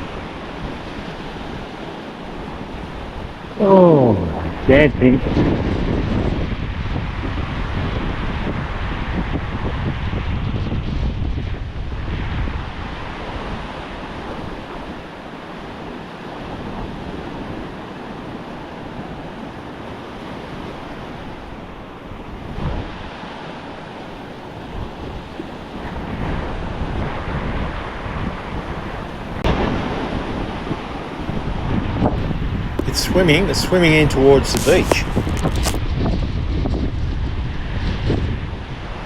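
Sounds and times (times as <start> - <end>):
surf washing onto beach: 0.0 - 39.0
wind buffeting microphone: 4.2 - 15.0, 16.4 - 23.3, 24.0 - 39.0.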